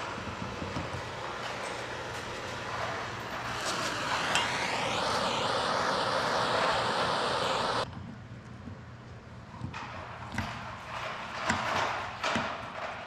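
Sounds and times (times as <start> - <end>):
gas torch hissing: 0.0 - 7.9.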